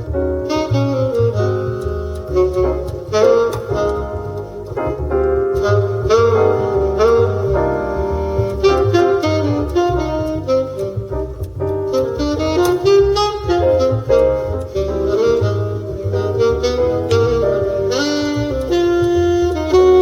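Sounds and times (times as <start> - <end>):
jazz trio on car speakers: 0.0 - 20.0.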